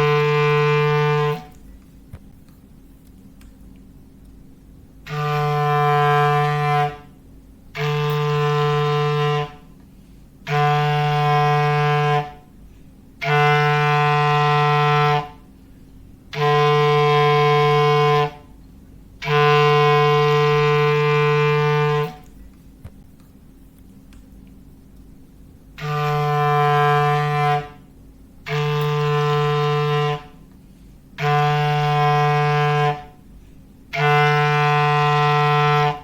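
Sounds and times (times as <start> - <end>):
clarinet low note blasts: 0.0 - 1.6, 5.0 - 9.8, 10.4 - 12.6, 13.2 - 15.6, 16.3 - 18.6, 19.2 - 22.3, 25.7 - 30.5, 31.2 - 33.3, 33.9 - 36.0.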